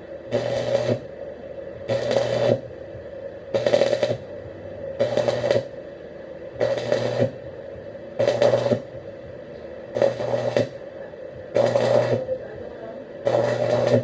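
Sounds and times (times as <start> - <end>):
arc welding crackling hiss: 0.0 - 1.2, 1.8 - 5.9, 6.5 - 14.0.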